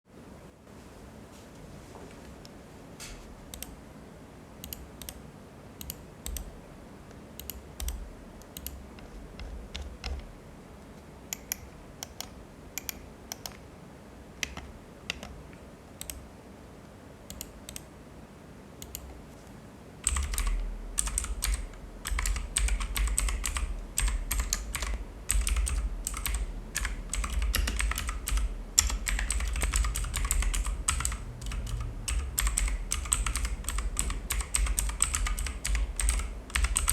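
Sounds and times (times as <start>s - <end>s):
clicky mechanical keyboard typing: 3.5s - 3.8s, 4.6s - 5.2s, 5.8s - 6.6s, 7.4s - 10.4s, 11.3s - 13.6s, 14.4s - 15.4s, 16.0s - 16.2s, 17.3s - 17.9s, 18.8s - 19.2s, 20.0s - 36.9s.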